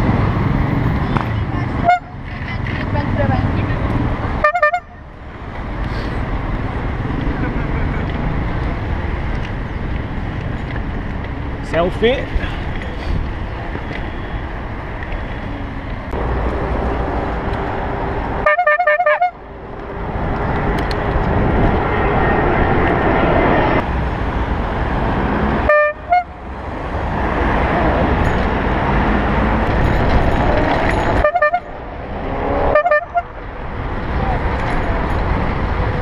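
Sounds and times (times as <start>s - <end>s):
traffic noise: 0.0s - 36.0s
bicycle horn honking: 1.8s - 2.2s, 4.4s - 5.0s, 18.4s - 19.4s, 25.6s - 26.4s, 31.2s - 31.7s, 32.7s - 33.3s
wind rush: 19.4s - 25.7s, 26.4s - 36.0s.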